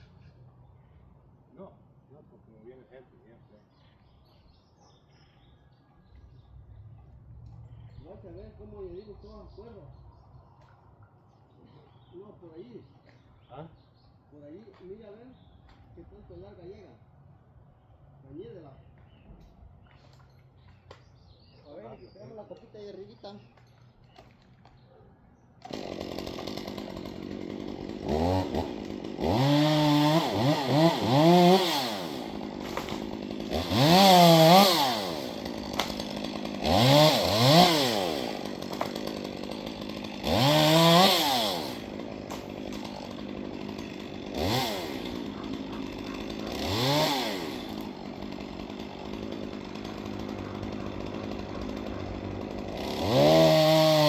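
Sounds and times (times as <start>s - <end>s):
chainsaw revving: 25.6s - 54.0s.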